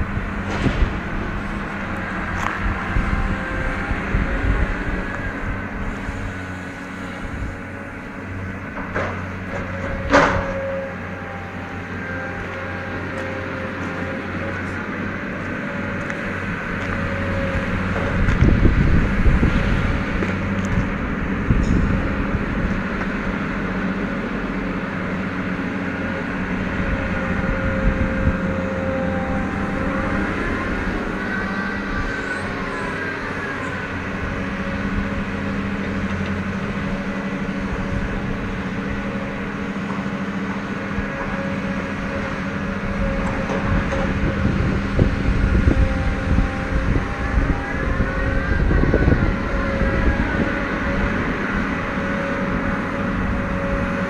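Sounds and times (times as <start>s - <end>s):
knocks and clunks: 0.0s - 3.8s
diesel engine running: 0.0s - 54.0s
hydraulic whine: 0.0s - 54.0s.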